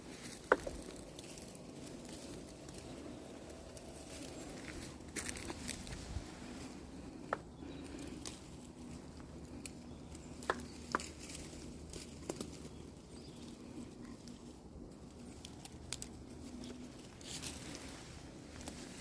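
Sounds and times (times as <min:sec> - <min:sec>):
faint low hum: 0:00.0 - 0:19.0
leaves and twigs rustling: 0:00.0 - 0:19.0
olives dropping clicks: 0:15.4 - 0:16.5.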